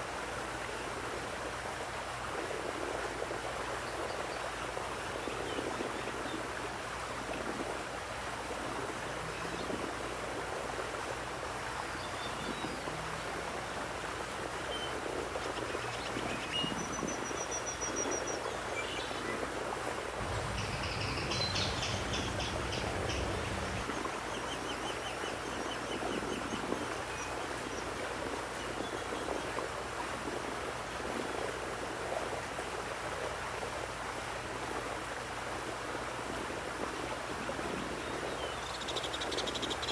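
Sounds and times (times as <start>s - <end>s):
running water: 0.0s - 39.9s
low rumble: 20.2s - 23.8s
songbirds chirping and trilling: 20.2s - 27.9s.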